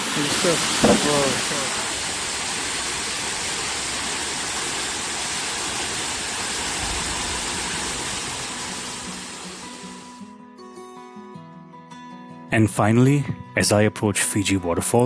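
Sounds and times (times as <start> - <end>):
waterfall rushing: 0.0 - 10.2.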